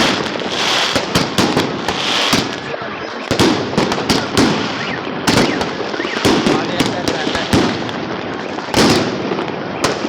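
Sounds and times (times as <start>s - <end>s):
fireworks bangs and pops: 0.0s - 10.0s
fireworks crackle: 0.0s - 10.0s.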